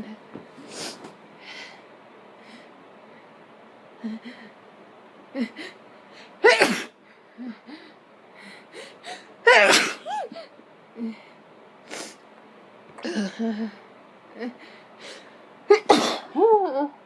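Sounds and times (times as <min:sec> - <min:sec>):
person sneezing: 0:06.4 - 0:07.0, 0:09.5 - 0:10.4, 0:15.7 - 0:16.4.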